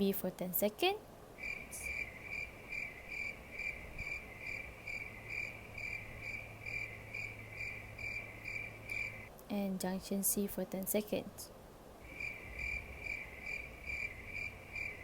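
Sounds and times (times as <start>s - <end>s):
cricket chirping: 1.4s - 9.3s, 12.0s - 15.0s.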